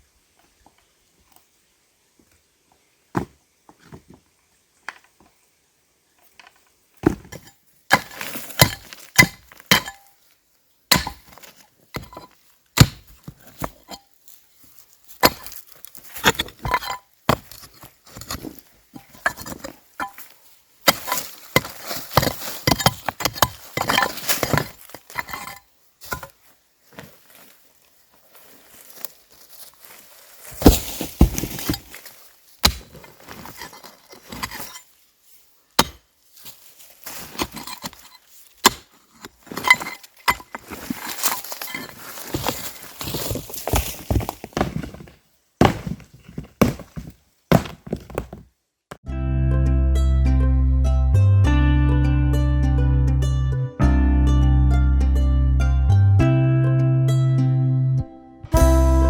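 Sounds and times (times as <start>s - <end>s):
wood being chopped: 7.0s - 10.0s, 10.9s - 12.2s, 12.8s - 13.8s, 15.2s - 15.6s, 30.6s - 31.9s, 32.6s - 33.0s, 35.8s - 36.0s, 38.6s - 38.9s, 43.7s - 48.4s
rustling: 7.2s - 10.4s, 11.0s - 48.5s.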